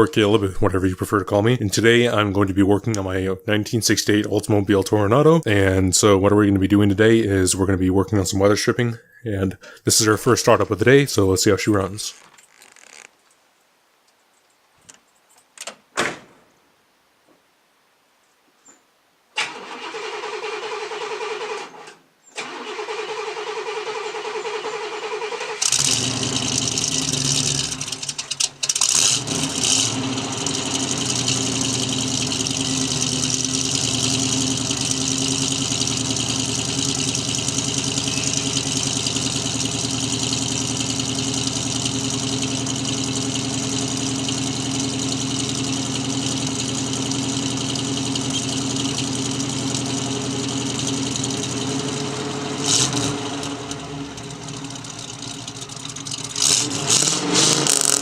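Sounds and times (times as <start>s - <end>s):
engine starter cranking: 19.4s - 58.0s
car engine fast idle: 22.4s - 58.0s.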